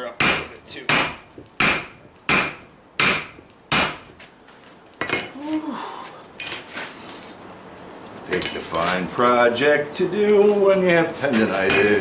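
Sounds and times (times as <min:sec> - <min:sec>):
hammer striking steel on anvil: 0:00.2 - 0:04.0.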